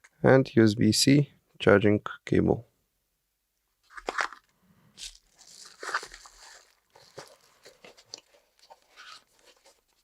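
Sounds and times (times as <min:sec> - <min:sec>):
rustling and crinkling: 0:03.8 - 0:10.0.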